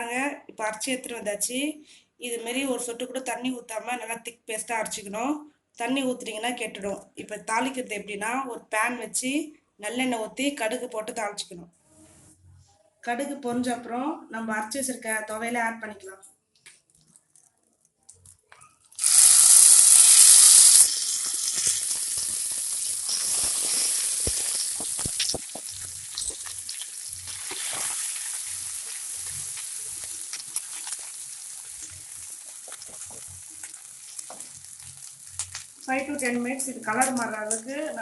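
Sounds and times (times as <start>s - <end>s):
paste sizzling in hot oil: 19.0s - 37.2s
stirring clicks: 21.1s - 35.9s.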